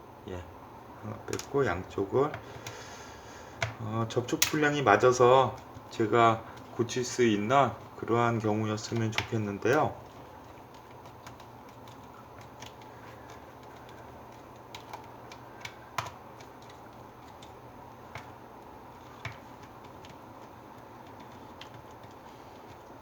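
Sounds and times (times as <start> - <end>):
sharp plastic click: 3.6 - 4.7.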